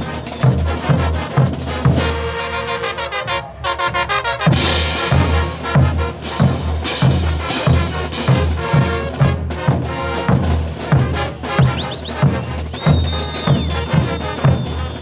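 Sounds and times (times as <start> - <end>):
brass band playing: 0.0 - 15.0
bass drum beat: 4.5 - 15.0.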